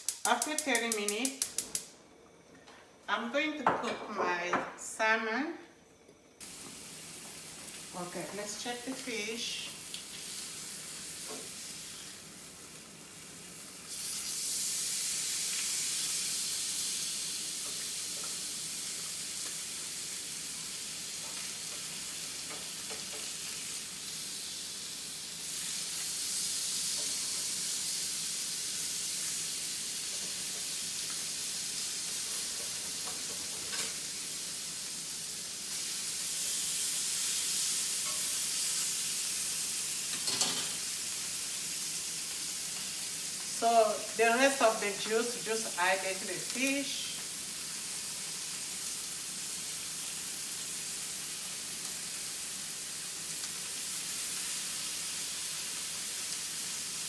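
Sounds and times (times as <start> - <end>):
fish fillets sizzling: 6.4 - 57.0.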